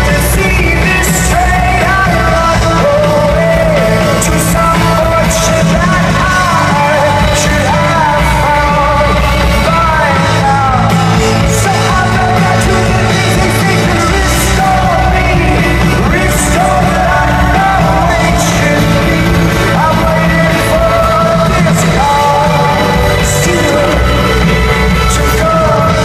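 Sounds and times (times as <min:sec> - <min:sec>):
person singing lead vocal: 0:00.0 - 0:26.0
rock band playing live: 0:00.0 - 0:26.0.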